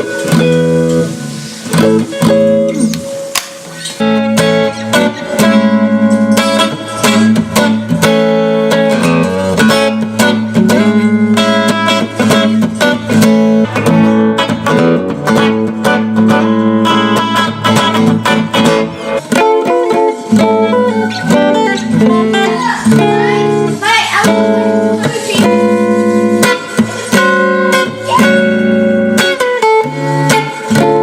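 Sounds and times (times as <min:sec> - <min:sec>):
electric guitar notes and chords: 0:00.0 - 0:31.0.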